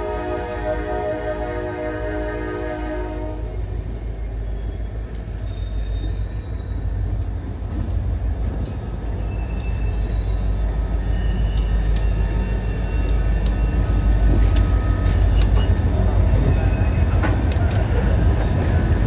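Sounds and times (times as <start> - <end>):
freight train rumbling past: 0.0 - 19.0
sharp clicks of train wheels: 0.0 - 19.0
faint high squeals: 4.2 - 7.1, 9.0 - 19.0.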